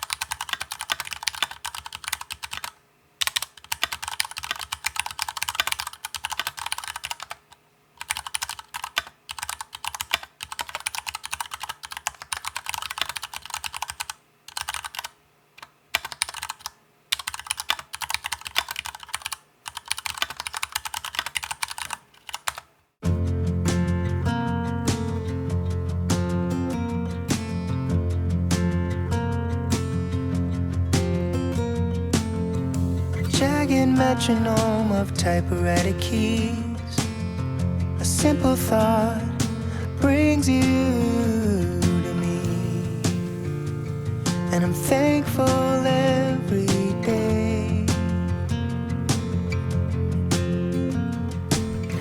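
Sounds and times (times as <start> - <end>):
fast typing on mechanical keyboard: 0.0 - 22.7
guitar music: 23.0 - 52.0.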